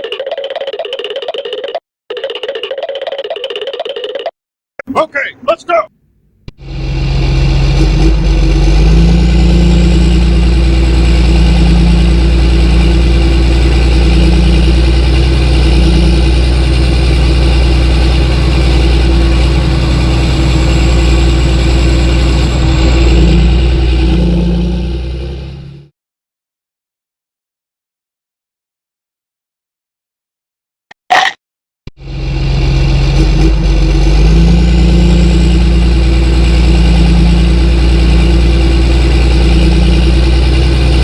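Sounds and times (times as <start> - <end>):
engine idling: 4.8 - 24.1.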